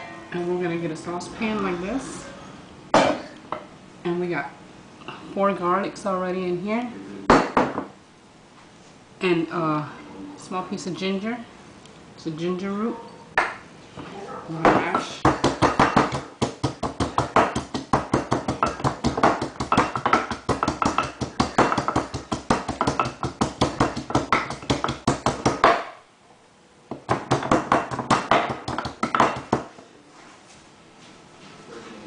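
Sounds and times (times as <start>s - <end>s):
garlic being pounded: 14.7s - 26.0s, 26.9s - 29.7s.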